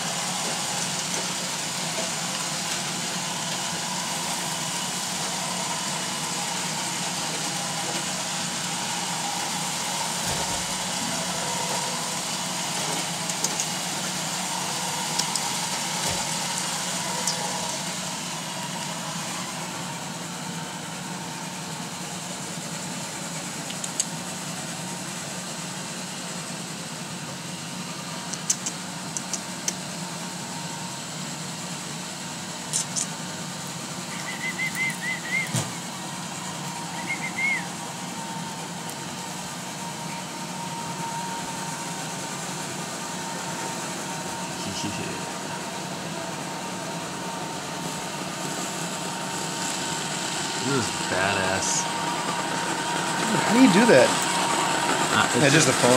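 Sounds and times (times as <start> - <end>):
sharp clicks: 13.3 - 13.7, 23.6 - 24.1, 28.3 - 29.8, 32.7 - 33.1
robot vacuum motor drone: 33.6 - 55.9
high warbling chirps: 34.0 - 35.5, 36.9 - 37.8.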